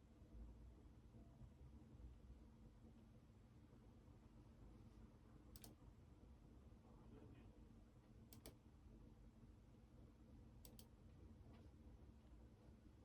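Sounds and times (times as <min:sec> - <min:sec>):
low room hum: 0:00.0 - 0:13.0
computer mouse clicking: 0:05.5 - 0:05.8, 0:08.3 - 0:08.6, 0:10.6 - 0:10.9.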